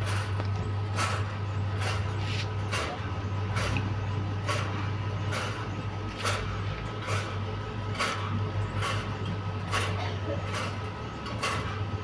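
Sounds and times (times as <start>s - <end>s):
regular repeating fan noise: 0.0s - 12.0s.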